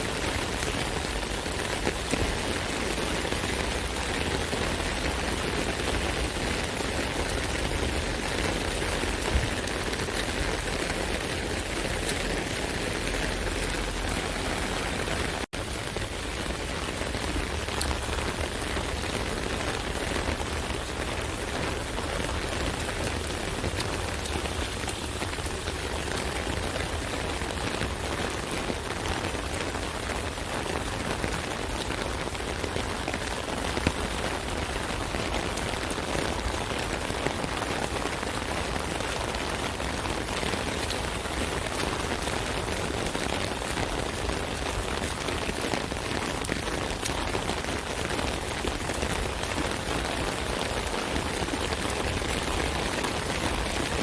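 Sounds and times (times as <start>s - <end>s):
rain pattering on an umbrella: 0.0s - 54.0s.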